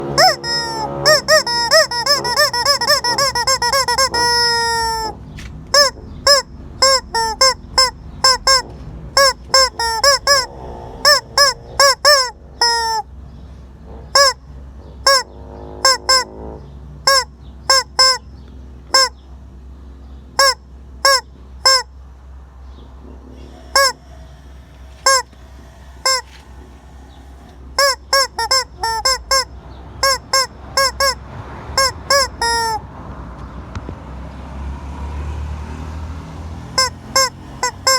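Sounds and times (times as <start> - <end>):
rubber squeaky toy squawking: 0.0 - 13.1, 14.0 - 16.4, 17.0 - 18.3, 18.9 - 19.2, 20.4 - 22.0, 23.4 - 26.5, 27.5 - 32.9, 36.7 - 37.9.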